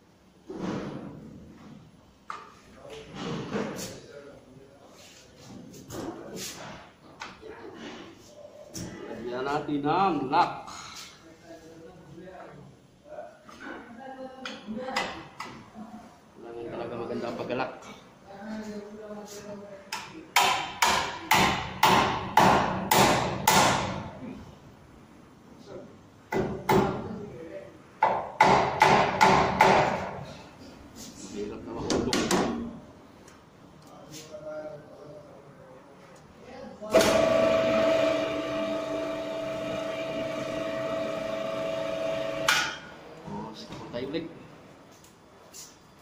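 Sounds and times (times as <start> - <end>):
lift drive humming and whining: 36.9 - 42.8.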